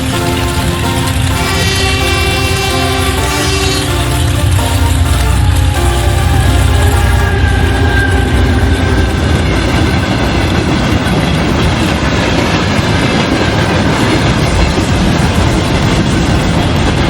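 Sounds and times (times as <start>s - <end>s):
train wheels clattering on rails: 6.3s - 17.0s.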